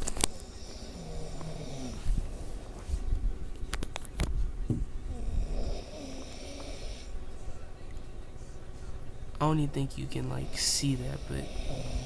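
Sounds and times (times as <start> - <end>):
man snoring: 0.5 - 2.1, 5.1 - 7.1, 10.3 - 12.0.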